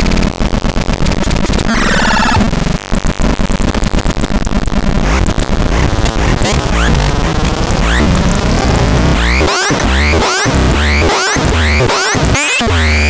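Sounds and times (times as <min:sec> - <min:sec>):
loud electronic static: 0:00.0 - 0:13.0
rising electronic glide: 0:05.0 - 0:13.0
warbling tone cluster: 0:05.0 - 0:13.0.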